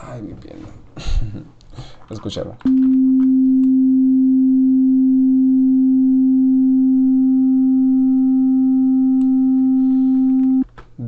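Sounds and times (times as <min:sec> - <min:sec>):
sine-wave test tone: 0:02.7 - 0:10.6.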